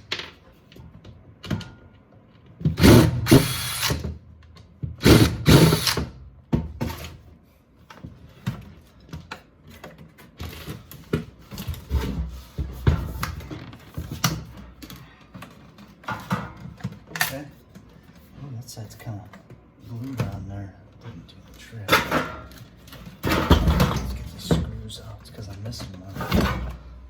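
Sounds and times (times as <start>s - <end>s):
cordless drill running: 2.8s - 4.0s, 5.0s - 6.1s.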